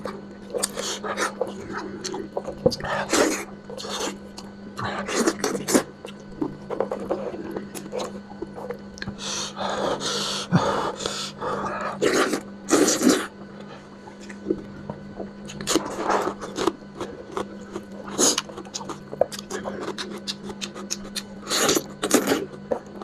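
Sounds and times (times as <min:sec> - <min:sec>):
person chewing with lip smacks: 0:00.0 - 0:09.2, 0:14.2 - 0:23.0
person slurping: 0:09.0 - 0:13.3.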